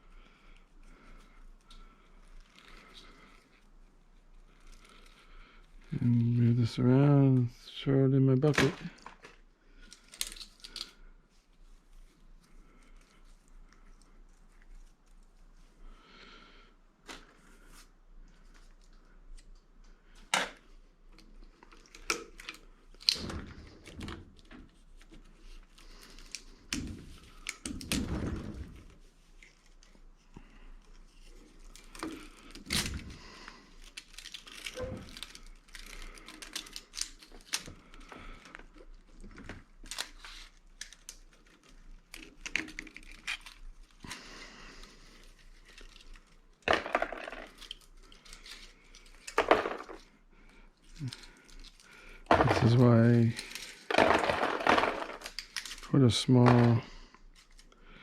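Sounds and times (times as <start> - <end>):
tearing and crinkling: 0.9 - 6.8, 8.4 - 15.8, 28.8 - 58.0.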